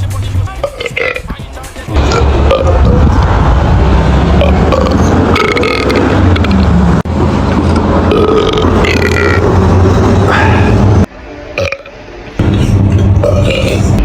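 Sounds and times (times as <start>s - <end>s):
person burping: 0.6s - 1.3s, 2.0s - 3.0s, 4.4s - 6.6s, 8.1s - 9.4s, 11.6s - 11.9s, 13.2s - 14.0s.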